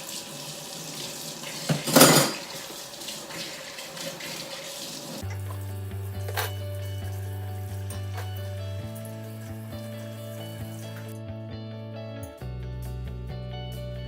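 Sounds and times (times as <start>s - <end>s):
tap running into sink: 0.1s - 6.7s
dishes clattering: 1.6s - 2.8s
background music: 5.2s - 14.0s.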